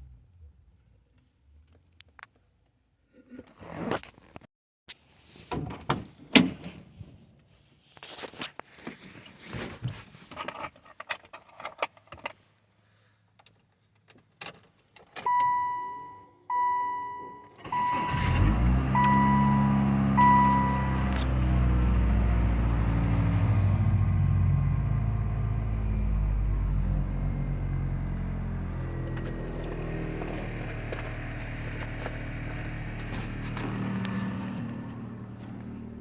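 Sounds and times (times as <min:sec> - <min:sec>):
car warning chime: 0:15.3 - 0:21.3
car engine starting and idling: 0:15.3 - 0:36.0.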